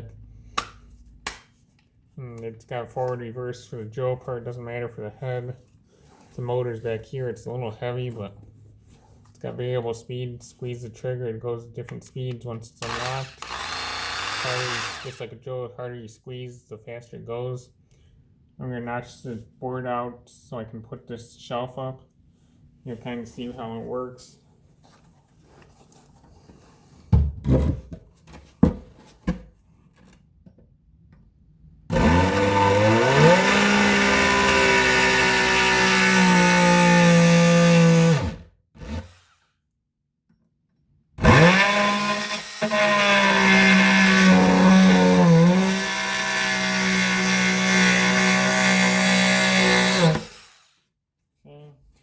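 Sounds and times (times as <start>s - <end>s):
multi-tool sawing wood: 12.8s - 15.2s, 31.9s - 39.5s, 41.2s - 50.8s.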